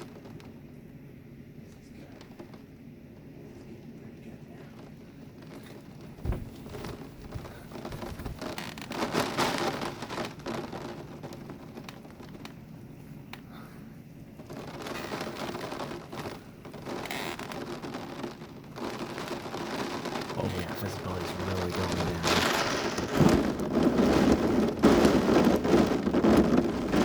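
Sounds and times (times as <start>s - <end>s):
heavy rain downpour: 14.8s - 27.0s.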